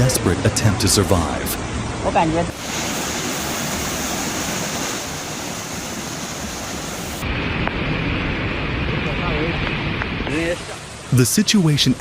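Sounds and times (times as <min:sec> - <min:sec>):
rushing floodwater: 0:00.0 - 0:12.0.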